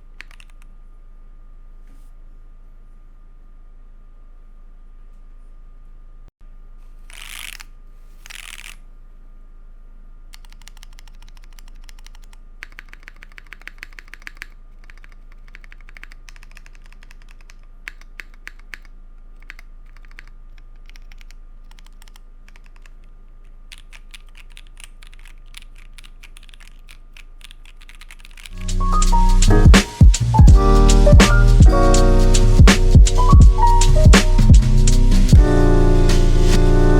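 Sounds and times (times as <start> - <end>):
mechanical keyboard typing: 0.2 - 0.6, 10.4 - 23.1, 23.7 - 29.3.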